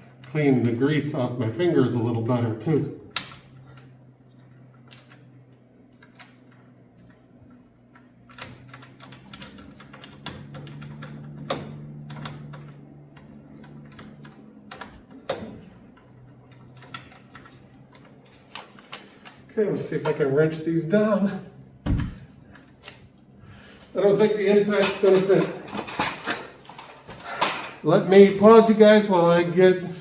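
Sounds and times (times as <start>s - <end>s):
steady low hum: 0.0s - 30.0s
clicks and taps of metal parts: 3.1s - 20.2s.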